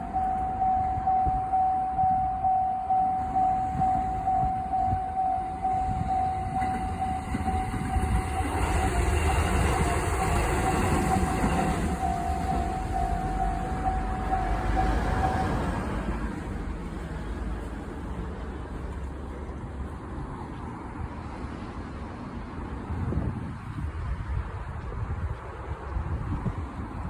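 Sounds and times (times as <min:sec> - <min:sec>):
level-crossing warning bell: 0:00.0 - 0:16.3
train rumble and wheel noise: 0:00.0 - 0:27.0.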